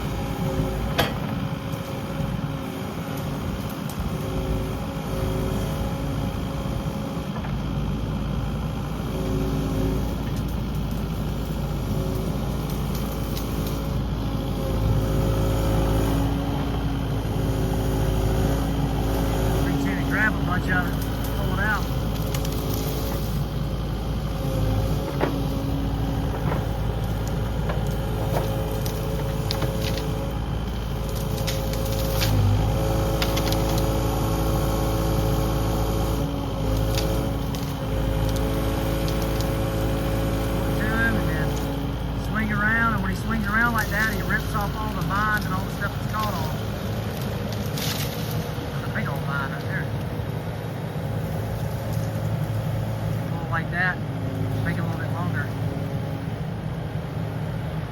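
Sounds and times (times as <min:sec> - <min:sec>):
excavator diesel engine running: 0:00.0 - 0:57.9.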